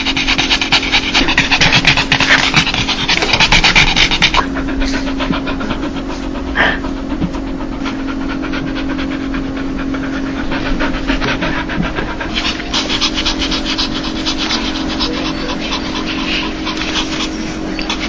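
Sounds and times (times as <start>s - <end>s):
dog panting: 0.0s - 18.0s
steady low hum: 0.0s - 18.0s.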